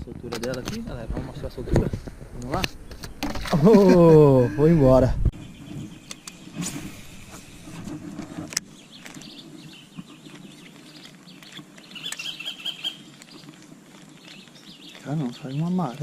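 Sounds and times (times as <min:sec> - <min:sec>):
bird chirping: 0:05.3 - 0:07.4, 0:08.6 - 0:16.0.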